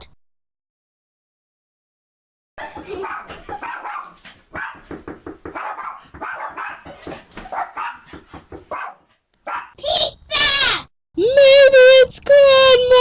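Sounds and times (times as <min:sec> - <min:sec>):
dog barking: 0:02.6 - 0:09.8.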